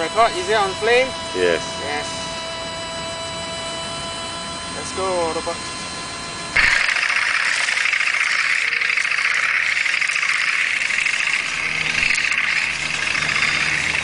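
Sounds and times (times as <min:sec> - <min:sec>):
toy tank motor whirring: 0:06.6 - 0:14.0.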